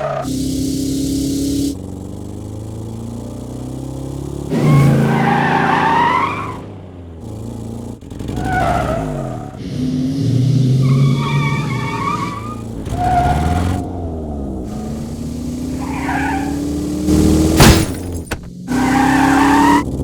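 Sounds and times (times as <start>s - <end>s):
car engines revving: 0.0s - 20.0s
tyre squeals: 10.7s - 19.9s.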